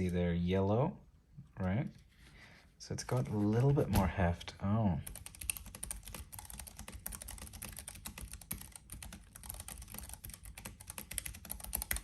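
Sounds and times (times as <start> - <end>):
mechanical keyboard typing: 5.1 - 12.0.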